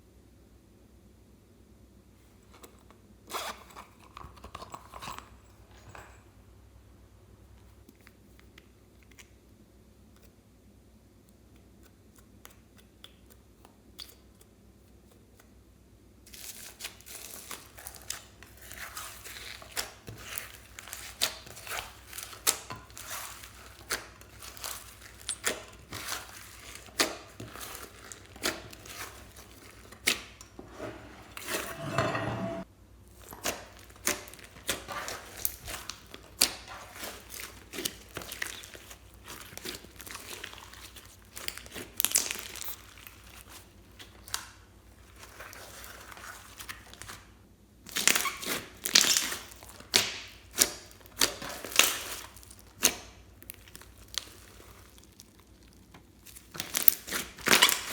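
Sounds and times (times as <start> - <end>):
slime crackling and popping: 16.3 - 30.4, 33.2 - 47.1, 47.9 - 57.9
slime squelch: 16.3 - 30.6, 33.1 - 47.3, 47.9 - 57.9.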